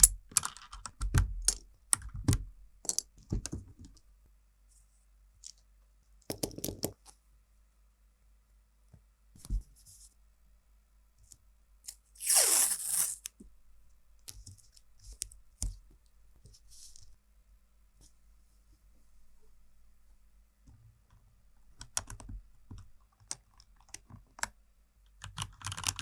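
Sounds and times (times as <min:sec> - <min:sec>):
loud tearing sound: 0:11.9 - 0:13.3
mechanical keyboard clicks: 0:25.2 - 0:26.0.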